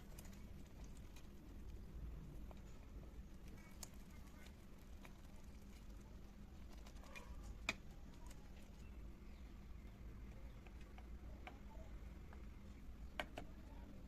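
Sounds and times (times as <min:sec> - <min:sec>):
low steady hum: 0:00.0 - 0:14.0
light clicks and taps: 0:10.3 - 0:12.5.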